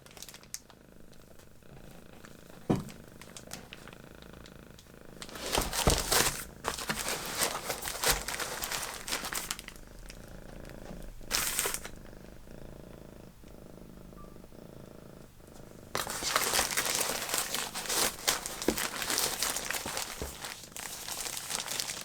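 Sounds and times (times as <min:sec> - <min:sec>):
packaging crinkling and rustling: 0:00.0 - 0:12.0, 0:15.9 - 0:22.0
cat purring: 0:00.0 - 0:22.0.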